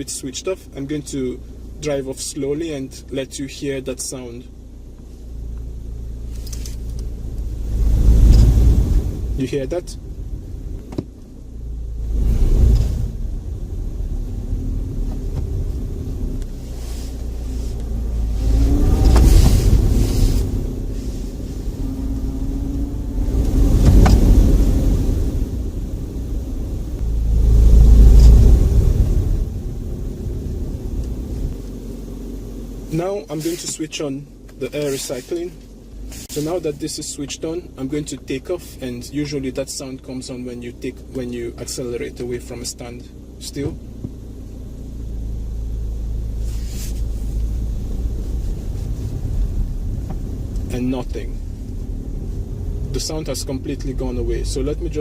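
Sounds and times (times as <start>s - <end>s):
car cabin rumble: 0.0s - 55.0s
brief hiss: 16.5s - 21.8s, 34.8s - 36.7s, 46.3s - 49.4s.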